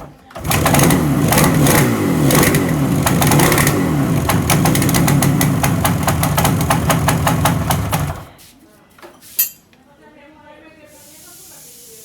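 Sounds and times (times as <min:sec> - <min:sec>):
motorcycle engine revving: 0:00.3 - 0:08.3
exhaust pops crackling: 0:00.4 - 0:08.3.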